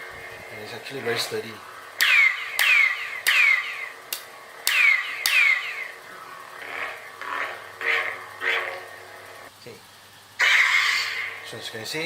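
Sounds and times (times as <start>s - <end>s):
lightsaber swing sounds: 0.0s - 9.4s
lightsaber cracks with falling tone: 0.0s - 9.5s, 10.4s - 11.9s.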